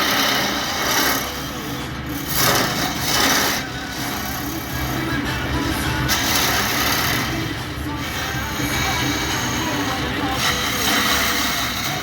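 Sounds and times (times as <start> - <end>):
lathe motor hum: 0.0 - 12.0
wood rasping on lathe: 0.0 - 12.0.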